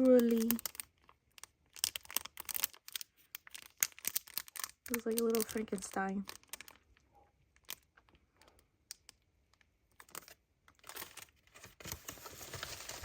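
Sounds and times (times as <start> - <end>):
plastic wrapping crinkling: 0.0 - 13.0.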